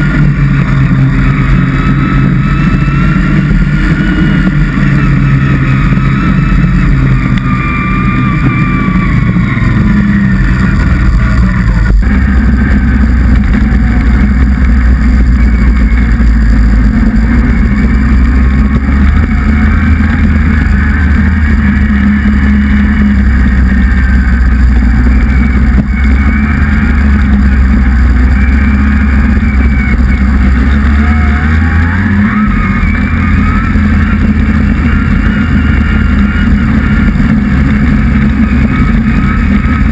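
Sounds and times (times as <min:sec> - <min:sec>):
vehicle engine running: 0:00.0 - 0:39.9.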